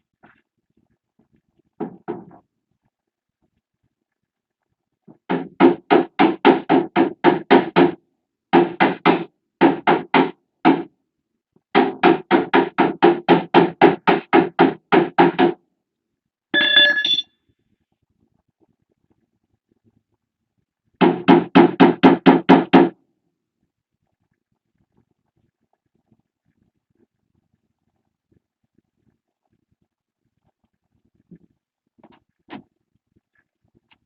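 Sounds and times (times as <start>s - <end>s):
hammer tapping on sheet metal: 5.3s - 8.0s, 8.6s - 10.9s, 11.8s - 15.6s, 21.0s - 22.9s
brief metallic ring: 16.6s - 17.2s.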